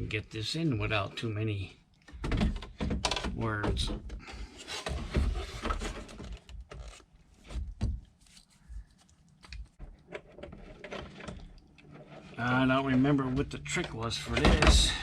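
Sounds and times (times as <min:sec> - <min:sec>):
plastic clicks knocks and rubbing: 0:02.0 - 0:08.5.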